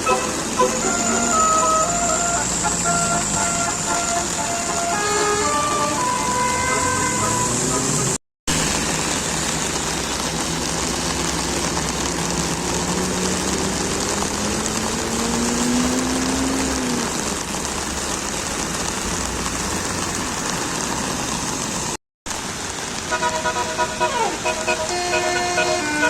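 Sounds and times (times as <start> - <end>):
bus musical horn tune: 0.0 - 8.2, 23.0 - 26.0
bus engine accelerating: 0.0 - 26.0
traffic noise: 0.0 - 26.0.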